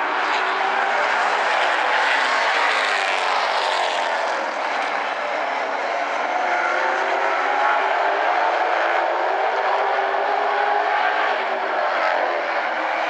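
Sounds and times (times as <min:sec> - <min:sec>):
race car engines at high revs: 0:00.0 - 0:13.0.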